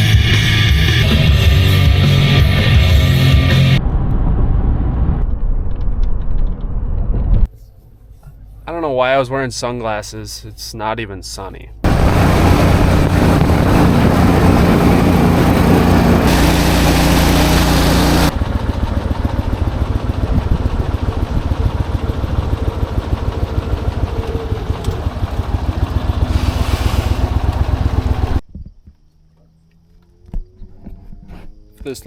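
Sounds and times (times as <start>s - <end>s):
loud engine running: 11.8s - 28.4s.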